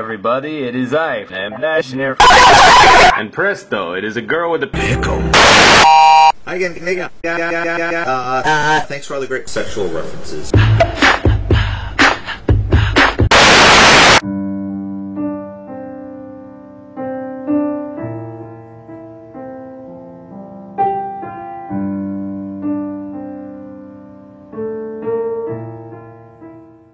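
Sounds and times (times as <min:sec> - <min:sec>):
loud hiss burst: 0:13.3 - 0:14.2
slow piano chords: 0:14.2 - 0:26.9.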